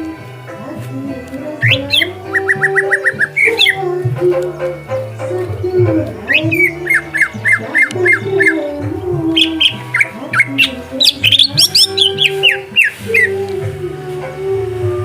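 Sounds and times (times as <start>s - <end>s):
background music: 0.0s - 15.0s
bird chirping and whistling: 1.6s - 3.8s, 6.2s - 13.4s.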